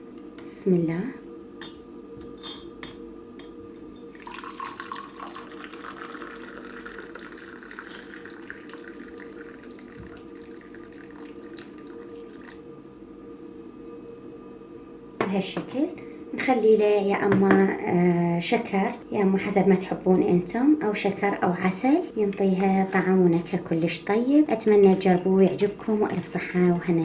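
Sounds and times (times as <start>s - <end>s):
liquid pouring from pot: 4.1s - 12.6s.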